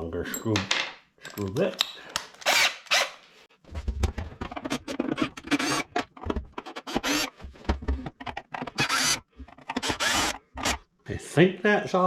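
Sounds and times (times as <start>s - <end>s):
clicks and scrapes of handling: 3.7s - 10.8s.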